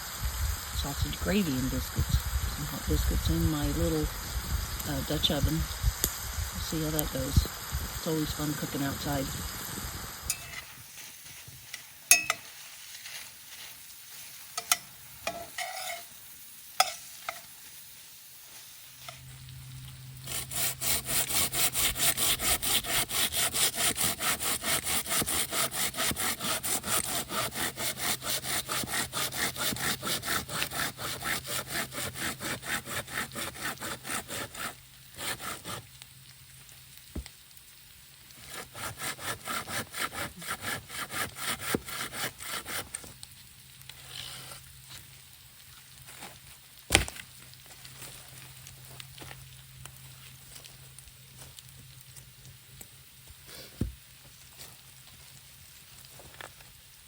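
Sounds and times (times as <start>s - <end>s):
hand saw cutting wood: 20.2s - 35.9s, 38.4s - 43.1s.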